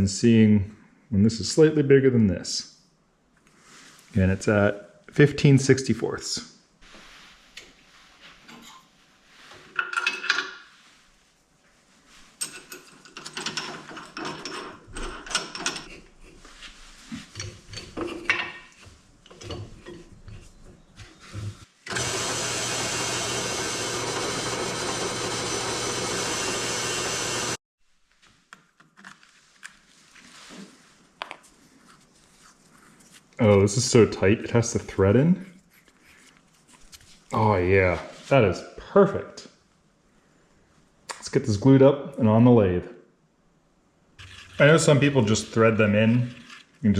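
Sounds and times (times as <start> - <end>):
tools clicking and rattling: 12.4 - 16.1
power drill boring into wood: 21.9 - 27.6.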